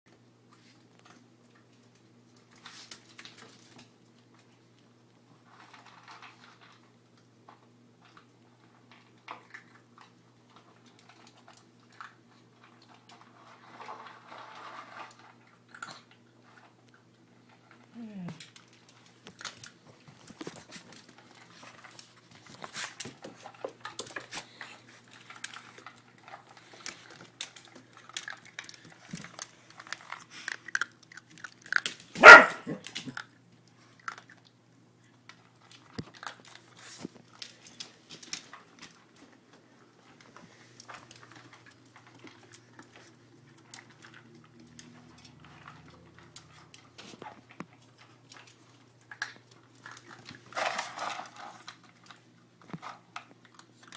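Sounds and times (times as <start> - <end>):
dogs crunching food: 0.1 - 53.9
dog barking: 32.2 - 32.8.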